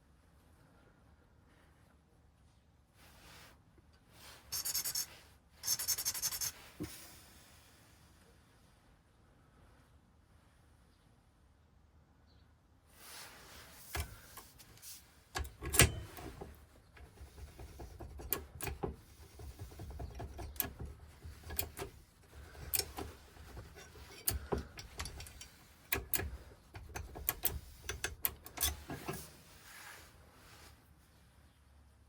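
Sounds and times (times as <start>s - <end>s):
small metal parts clicking and knocking: 13.9s - 29.3s.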